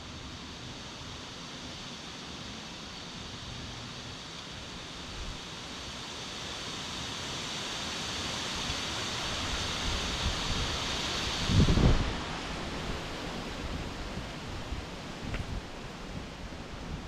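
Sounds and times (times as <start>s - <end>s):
wind blowing: 9.3s - 17.0s
wind gusts buffeting microphone: 9.3s - 17.0s.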